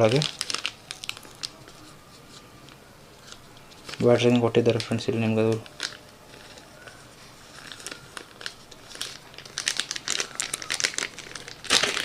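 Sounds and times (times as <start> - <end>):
packaging rustling and clicking: 0.0 - 12.0.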